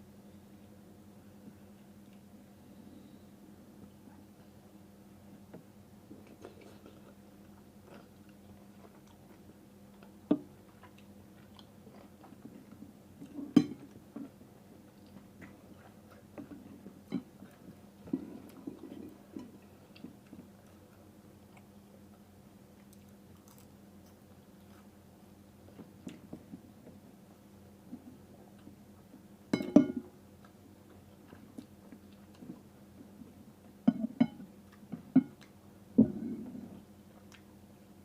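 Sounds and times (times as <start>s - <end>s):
person chewing noodles: 22.8s - 24.9s.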